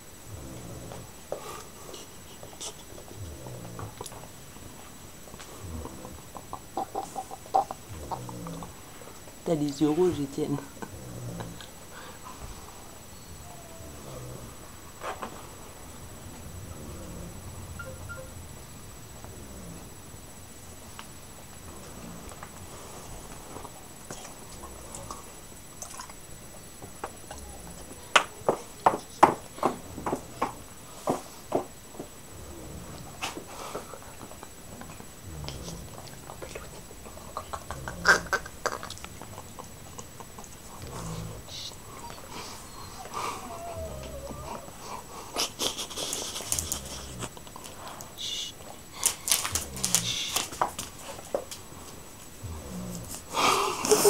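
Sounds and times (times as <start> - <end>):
pet snoring: 0.2 - 4.3, 5.4 - 9.1, 10.7 - 15.3, 15.9 - 18.2, 19.2 - 20.1, 21.6 - 23.3, 32.2 - 34.0, 34.8 - 39.0, 40.8 - 47.4, 52.4 - 53.8.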